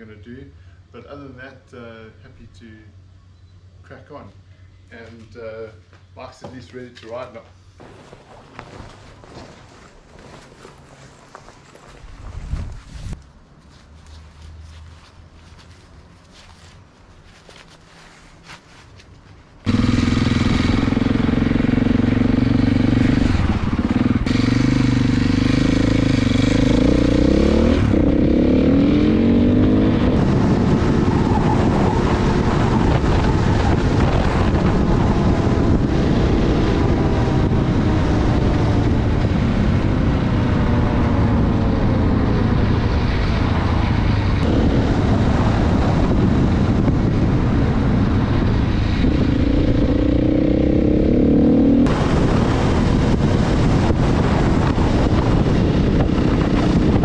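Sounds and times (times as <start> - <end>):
dirt bike engine revving: 19.6 - 46.6, 47.2 - 57.0.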